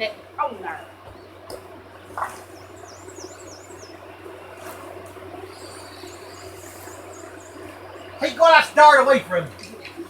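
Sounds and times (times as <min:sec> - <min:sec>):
steady background noise: 0:00.0 - 0:10.0
small bird chirping: 0:01.0 - 0:08.4.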